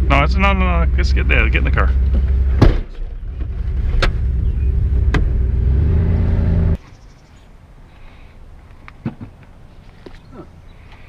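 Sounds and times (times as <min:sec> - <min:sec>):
truck engine running: 0:00.0 - 0:06.8
vehicle door thump: 0:02.1 - 0:03.1.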